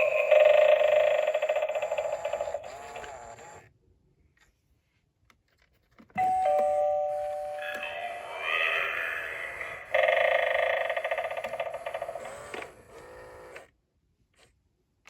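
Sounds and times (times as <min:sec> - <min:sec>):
two-note ding-dong chime: 0:06.2 - 0:07.7
doorbell sound effects: 0:06.2 - 0:08.4.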